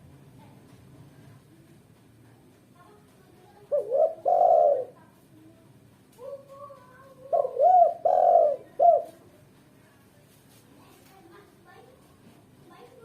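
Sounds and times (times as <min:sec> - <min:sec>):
dove cooing: 0:03.7 - 0:05.0, 0:06.3 - 0:09.2.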